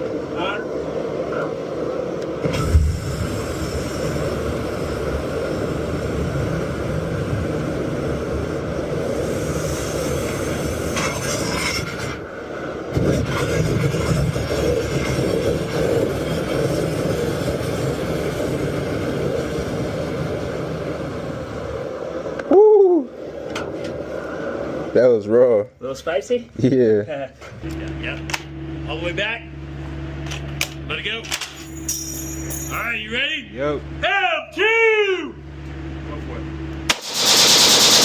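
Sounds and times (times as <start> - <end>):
flamethrower rushing blast: 0.0 - 22.4, 36.9 - 38.0.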